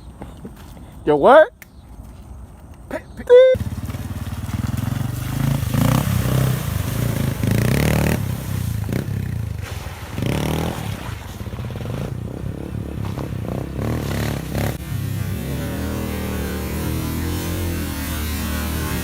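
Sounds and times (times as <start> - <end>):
motorcycle engine running: 3.5 - 19.0.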